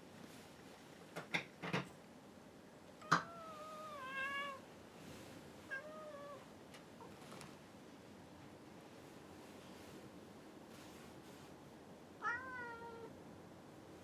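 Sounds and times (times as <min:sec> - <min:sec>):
cat meowing: 0:03.0 - 0:04.7, 0:05.7 - 0:06.5, 0:12.2 - 0:13.1.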